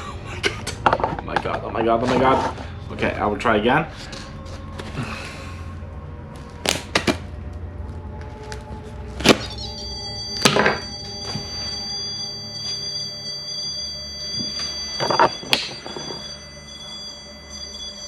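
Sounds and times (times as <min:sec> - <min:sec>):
high electronic alarm tone: 0:09.0 - 0:18.0.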